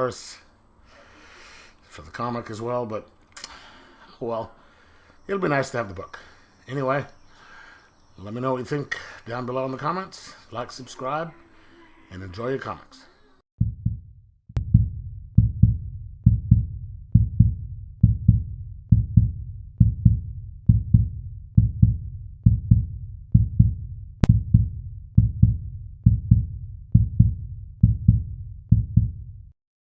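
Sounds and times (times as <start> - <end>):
faint clicks: 3.0 - 4.1
deep drum beat: 13.6 - 29.3.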